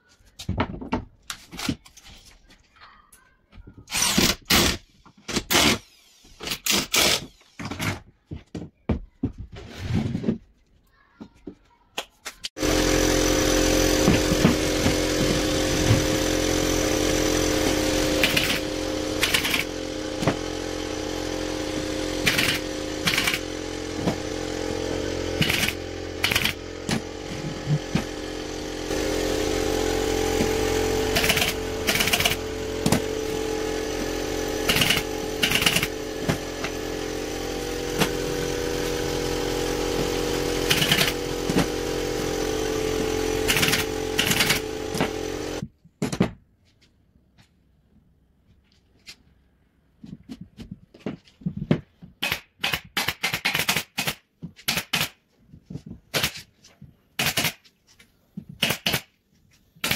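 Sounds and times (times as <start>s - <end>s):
motor-driven power tool running: 5.4s - 7.6s, 12.6s - 45.6s.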